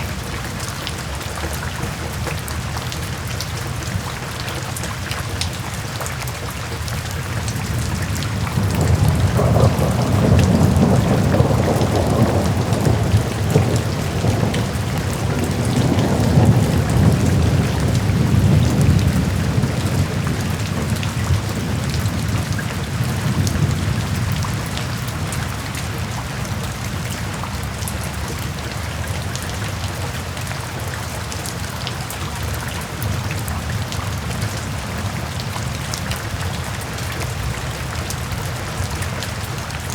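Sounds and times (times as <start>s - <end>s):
rain hissing and pattering: 0.0s - 39.9s
low roll of thunder: 7.6s - 27.4s.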